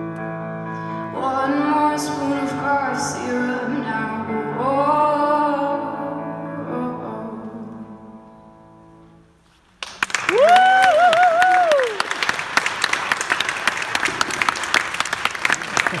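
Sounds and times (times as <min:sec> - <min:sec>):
audience applauding: 0:09.8 - 0:16.0.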